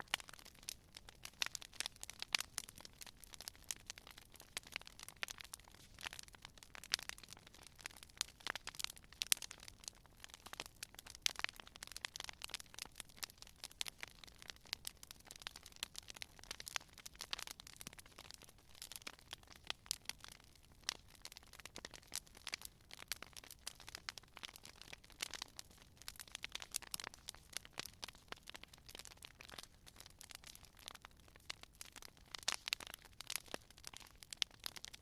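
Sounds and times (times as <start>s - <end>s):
campfire crackling: 0.0s - 35.0s.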